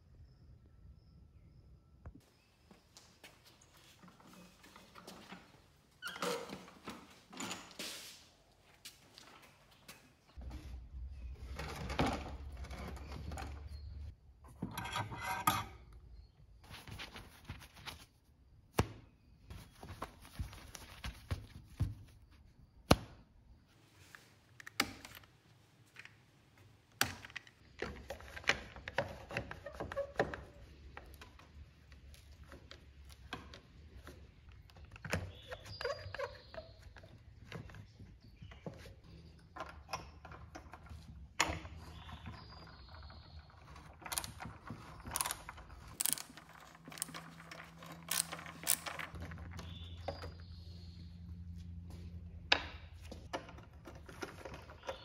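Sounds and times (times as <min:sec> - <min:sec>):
tools clicking and knocking: 0:39.5 - 0:50.3.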